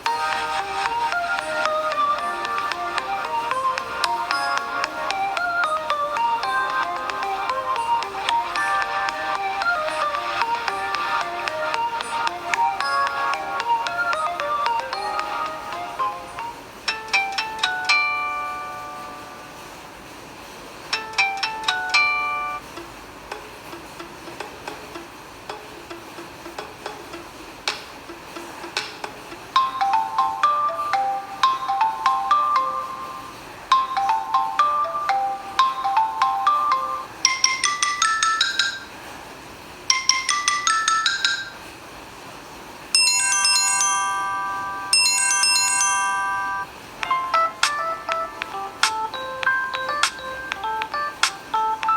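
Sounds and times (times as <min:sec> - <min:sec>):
ringtone melody: 0:00.0 - 0:20.1, 0:20.9 - 0:39.1, 0:39.9 - 0:41.7, 0:43.0 - 0:51.9.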